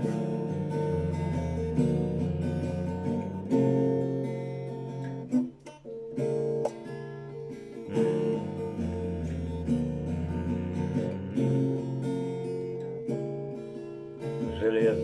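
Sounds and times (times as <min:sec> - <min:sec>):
acoustic guitar strumming chords: 0:00.0 - 0:15.0.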